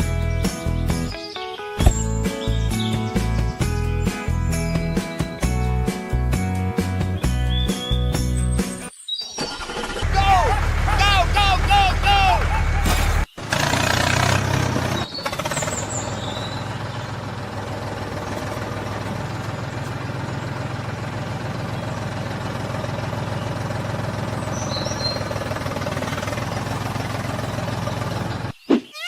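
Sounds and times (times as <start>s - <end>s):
engine humming steadily: 9.8s - 28.6s.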